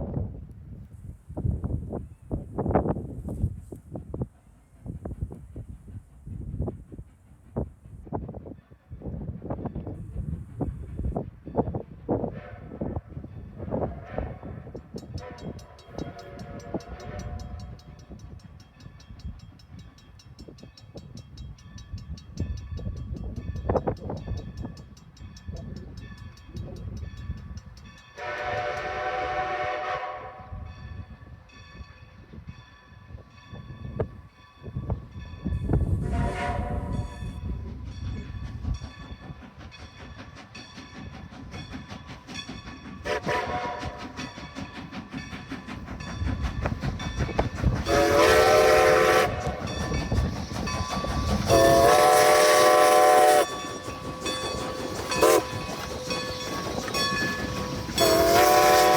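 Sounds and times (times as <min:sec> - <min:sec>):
train rumbling and clattering: 0:00.0 - 0:58.9
train horn chord blasts: 0:15.2 - 0:17.8, 0:28.2 - 0:30.7, 0:36.0 - 0:37.3, 0:43.0 - 0:44.0, 0:47.9 - 0:49.6, 0:51.5 - 0:53.5, 0:58.0 - 0:58.9.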